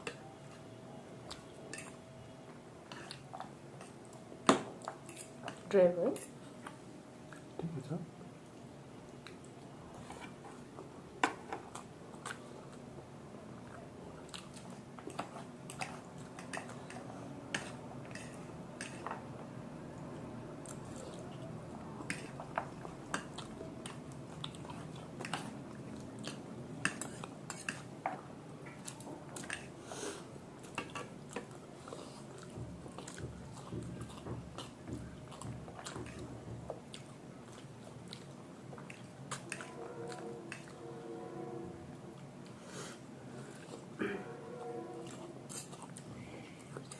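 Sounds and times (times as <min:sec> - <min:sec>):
person chewing food: 0:00.0 - 0:04.2, 0:06.4 - 0:07.6, 0:08.4 - 0:19.5, 0:20.6 - 0:40.8, 0:41.9 - 0:44.0, 0:45.0 - 0:46.9.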